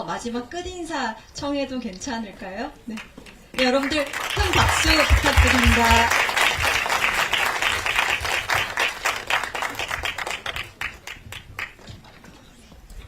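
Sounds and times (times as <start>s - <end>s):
audience applauding: 3.6s - 12.0s.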